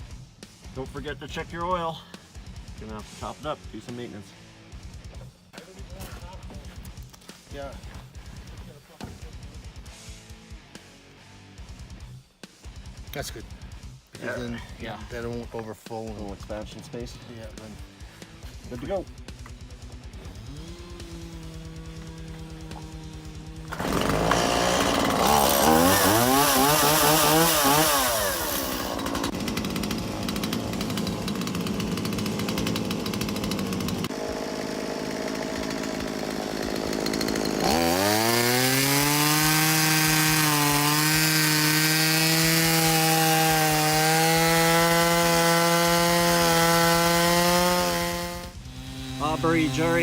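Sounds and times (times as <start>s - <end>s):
chainsaw running: 14.2s - 50.0s.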